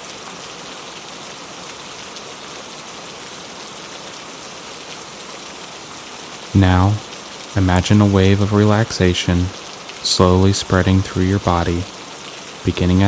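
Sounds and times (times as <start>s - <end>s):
gentle rain falling: 0.0s - 13.0s.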